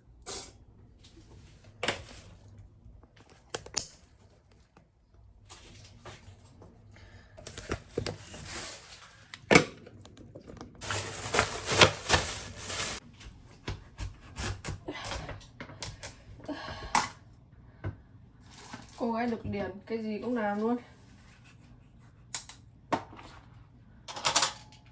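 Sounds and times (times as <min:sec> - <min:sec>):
rustling: 0:10.8 - 0:13.0.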